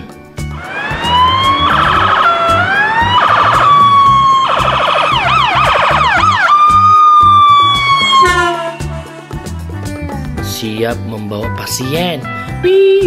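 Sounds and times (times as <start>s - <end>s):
background music with steady beat: 0.0s - 13.0s
toy electronic siren: 0.6s - 9.1s.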